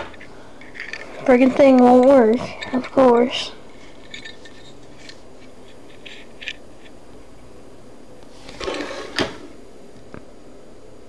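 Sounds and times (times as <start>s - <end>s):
rustling scrape: 8.3s - 9.6s.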